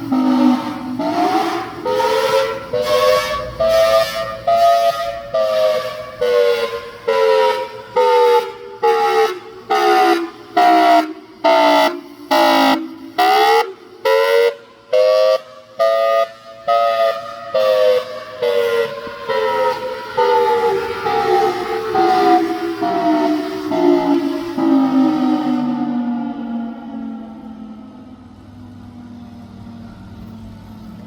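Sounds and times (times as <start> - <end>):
warning siren pulsed wail: 0.0 - 31.0.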